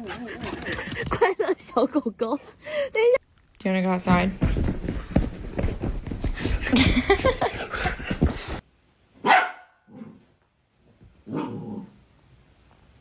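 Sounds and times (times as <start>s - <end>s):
dog barking: 9.2s - 10.2s.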